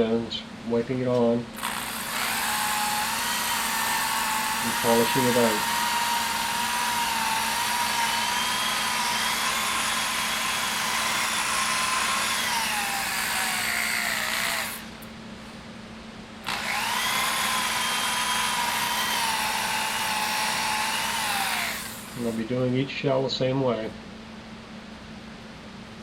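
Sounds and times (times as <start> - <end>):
electric drill motor whine: 1.6 - 15.0, 16.4 - 22.6.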